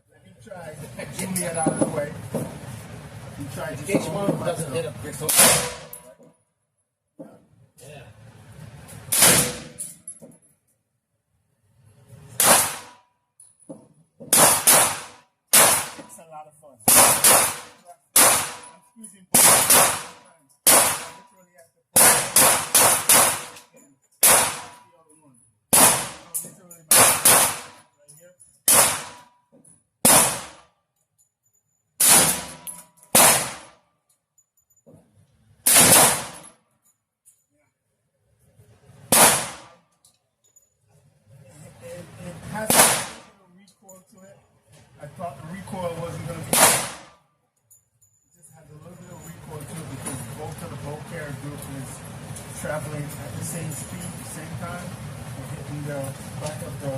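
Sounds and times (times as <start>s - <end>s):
rifle shots with ringing tail: 5.2s - 6.1s, 9.1s - 9.9s, 12.4s - 13.0s, 14.3s - 16.2s, 16.9s - 21.3s, 22.0s - 24.9s, 25.7s - 27.8s, 28.7s - 29.3s, 30.0s - 30.7s, 32.0s - 33.8s, 35.6s - 36.6s, 39.1s - 39.8s, 42.6s - 43.4s, 46.4s - 47.2s.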